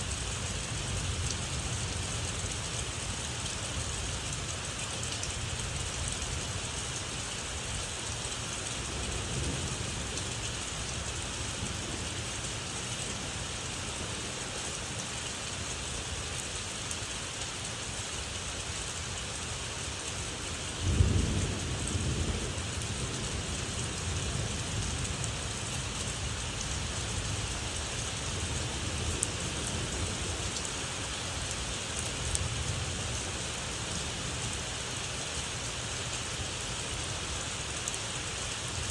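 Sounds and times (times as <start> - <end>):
steady rain: 0.0 - 38.9
thunder rumbling: 20.8 - 31.5.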